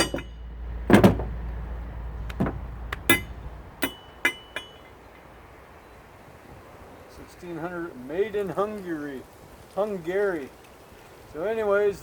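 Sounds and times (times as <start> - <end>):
metal scrap knocking and clicking: 0.0 - 1.3.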